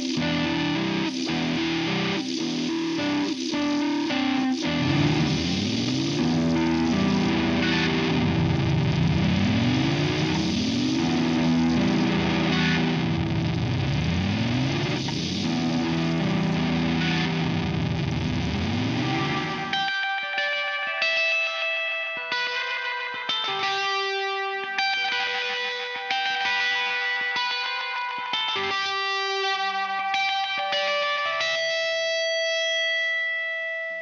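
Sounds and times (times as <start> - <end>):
fuzz electric guitar with echo: 0.0 - 34.0.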